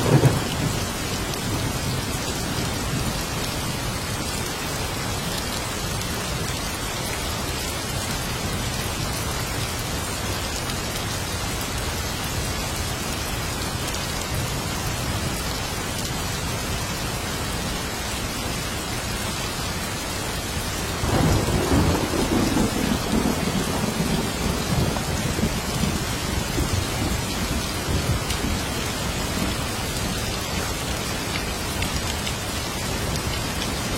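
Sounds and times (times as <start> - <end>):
thunder rolling: 0.0 - 0.9, 21.0 - 26.0
steady rain falling: 0.0 - 33.9.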